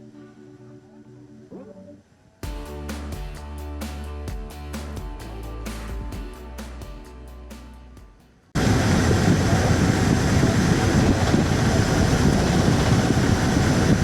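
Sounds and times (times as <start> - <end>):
background music: 0.0 - 8.5
airliner cabin engine rumble: 8.6 - 14.0.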